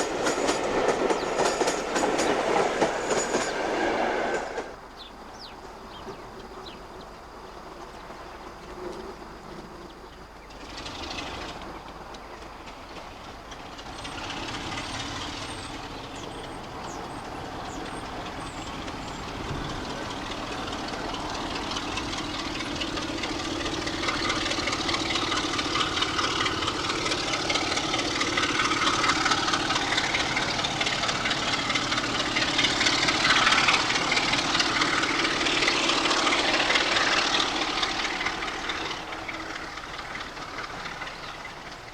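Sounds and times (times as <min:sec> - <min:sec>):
diesel train engine: 0:00.0 - 0:41.9
rail noise: 0:00.0 - 0:41.9.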